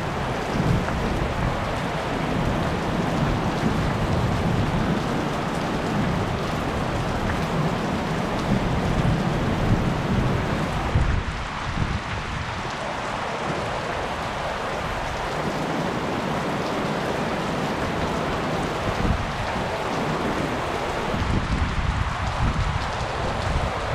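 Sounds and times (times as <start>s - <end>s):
heavy rain falling: 0.0s - 23.9s.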